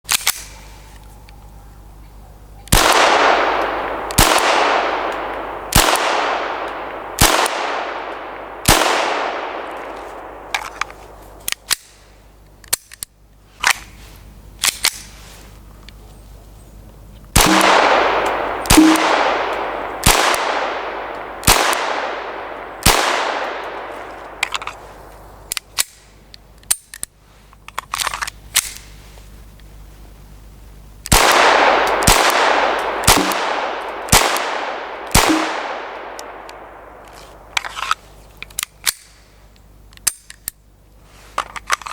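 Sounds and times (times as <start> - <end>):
pistol shots echoing: 2.7 - 12.0, 17.4 - 26.0, 31.1 - 37.5.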